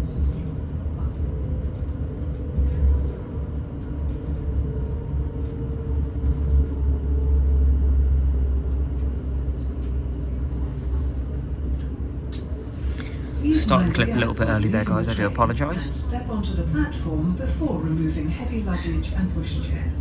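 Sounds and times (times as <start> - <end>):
train interior rumble: 0.0 - 20.0
faint steady hum: 7.4 - 20.0.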